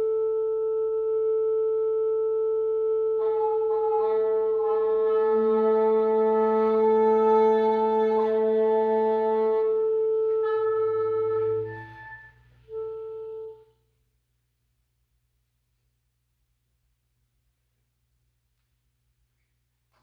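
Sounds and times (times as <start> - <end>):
wind quintet sustained chord: 0.0 - 13.7.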